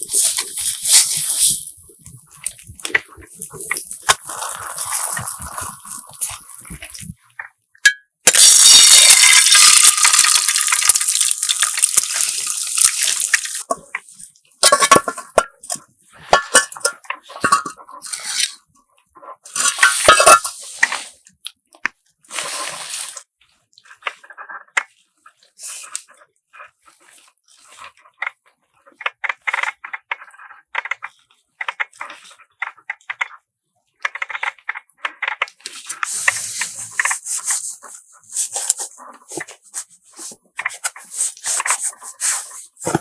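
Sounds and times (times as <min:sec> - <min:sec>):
water pouring: 0:00.1 - 0:07.2, 0:08.3 - 0:13.8.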